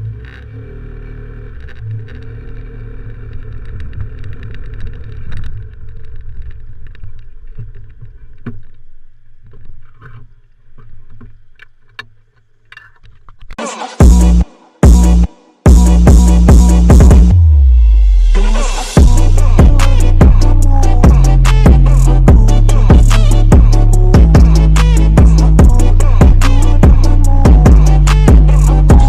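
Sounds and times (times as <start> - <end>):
motorcycle engine humming: 0.0 - 29.0
loud music with heavy beat: 13.6 - 29.0.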